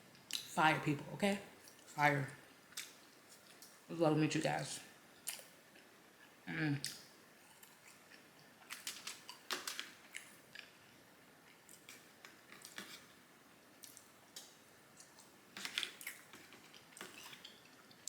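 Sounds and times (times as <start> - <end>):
chewing and wet mouth smacking: 13.8 - 18.0.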